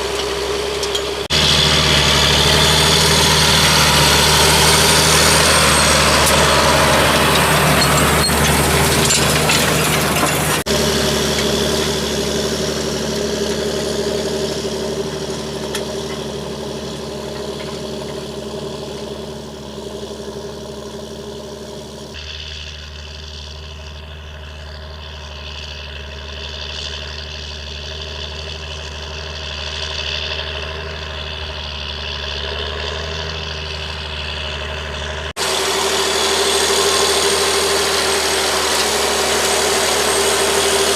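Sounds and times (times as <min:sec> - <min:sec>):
tractor diesel engine running: 0:00.0 - 0:40.9.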